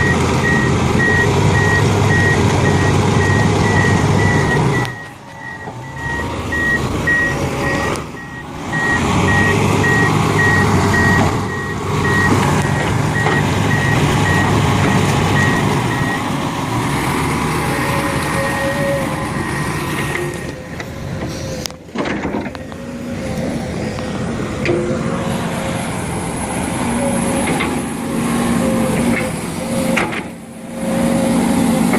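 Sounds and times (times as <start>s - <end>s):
reversing alarm beeping: 0.0s - 16.3s, 17.7s - 21.6s
diesel engine running: 0.0s - 31.9s.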